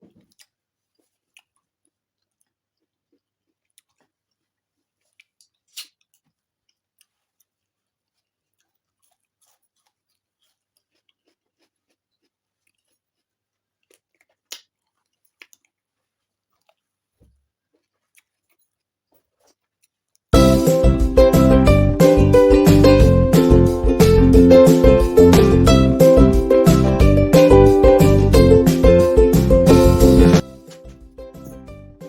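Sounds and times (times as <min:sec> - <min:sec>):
lip smacks: 0:00.0 - 0:20.3
wet chewing: 0:00.0 - 0:20.3
sharp mouth clicks: 0:05.1 - 0:06.2.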